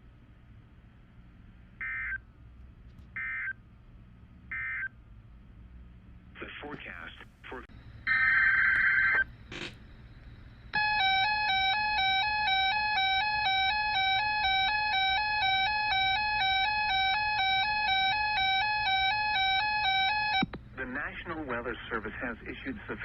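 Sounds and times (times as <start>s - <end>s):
buzzing data noise: 7.7s - 22.7s.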